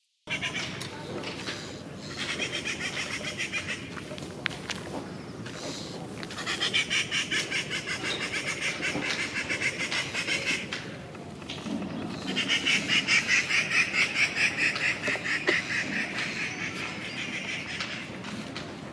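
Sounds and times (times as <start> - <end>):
bird calling in rapid runs: 6.3 - 18.2.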